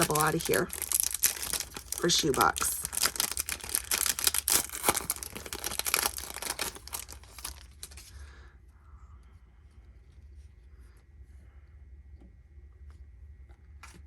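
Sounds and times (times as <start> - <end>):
wrapper tearing and crinkling: 0.0 - 8.1.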